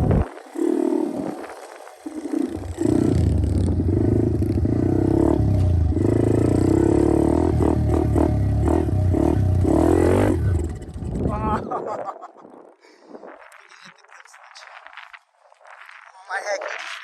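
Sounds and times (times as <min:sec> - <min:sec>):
engine revving: 0:00.0 - 0:11.5
pit bike engine: 0:00.0 - 0:11.6.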